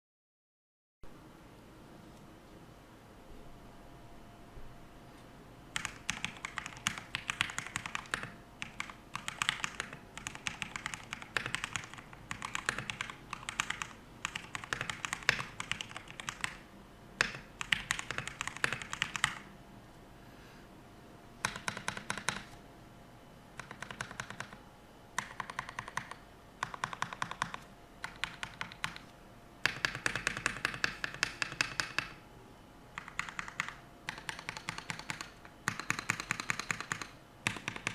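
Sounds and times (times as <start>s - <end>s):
mechanical keyboard typing: 5.8s - 16.6s, 17.2s - 19.5s, 21.4s - 22.6s, 23.6s - 24.6s, 25.2s - 32.2s, 33.0s - 37.9s.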